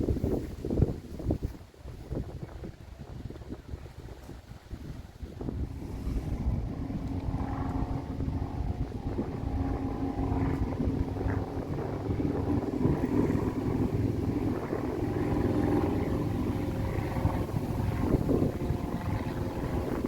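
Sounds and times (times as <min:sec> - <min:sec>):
wind noise on microphone: 0:00.0 - 0:20.0
engine humming: 0:05.5 - 0:20.0.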